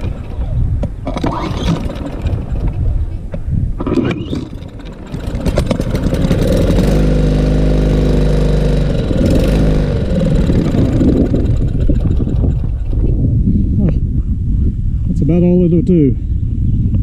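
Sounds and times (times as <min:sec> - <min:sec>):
lawn mower engine running: 0:00.0 - 0:13.3.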